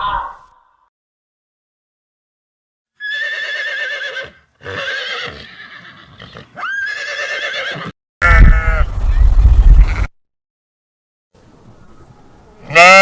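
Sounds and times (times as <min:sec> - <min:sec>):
horse whinnying: 0:03.0 - 0:08.9.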